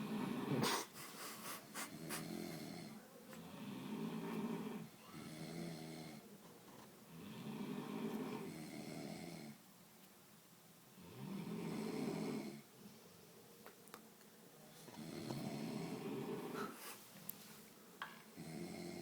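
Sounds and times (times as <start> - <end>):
people snoring: 0.0 - 0.9, 1.8 - 6.3, 7.1 - 9.6, 11.0 - 12.7, 15.0 - 16.8, 18.4 - 19.0.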